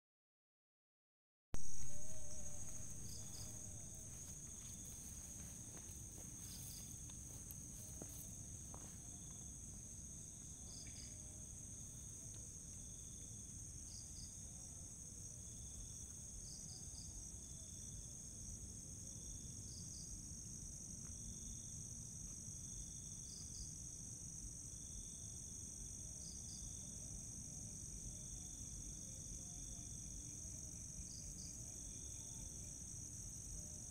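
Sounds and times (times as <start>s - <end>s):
insects chirping: 1.6s - 33.9s
low recording hiss: 1.6s - 33.9s.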